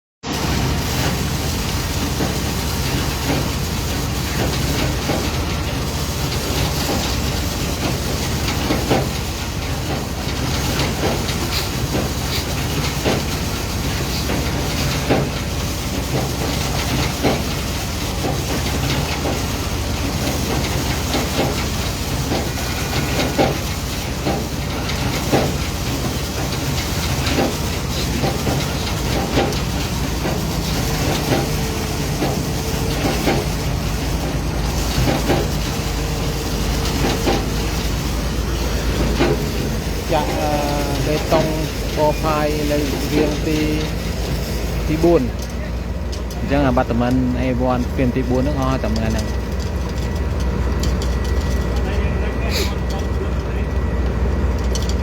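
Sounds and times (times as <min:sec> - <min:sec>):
construction machinery droning: 0:00.2 - 0:55.0
metallic knocks and clanks: 0:06.3 - 0:38.2, 0:38.9 - 0:44.5.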